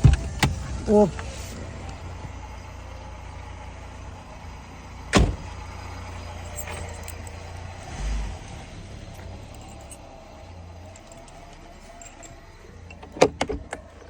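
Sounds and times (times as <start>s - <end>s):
car door slamming: 0.0s - 1.4s, 5.1s - 5.6s, 13.0s - 14.0s.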